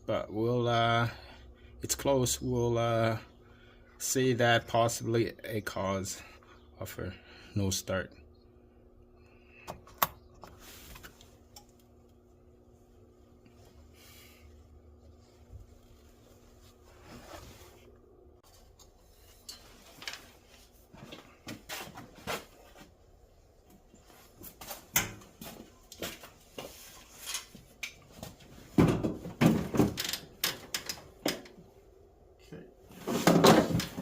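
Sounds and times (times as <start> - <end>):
tools and parts clattering: 19.3 - 20.5, 27.2 - 31.6, 32.9 - 34.0.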